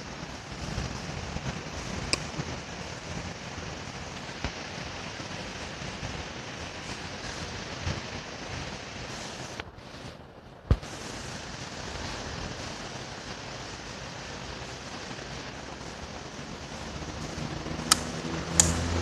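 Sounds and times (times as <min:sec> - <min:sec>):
ceiling fan air rush: 0:00.0 - 0:19.0
sharp click: 0:17.9 - 0:19.0.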